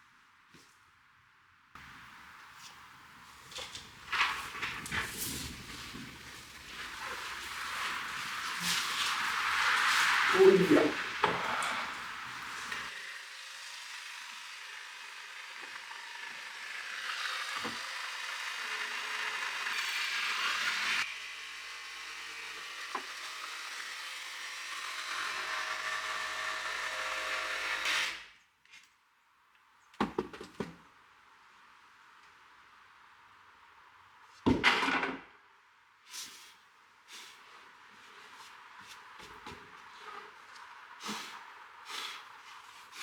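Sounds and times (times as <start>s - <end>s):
power saw cutting wood: 1.8s - 28.3s, 37.2s - 43.0s.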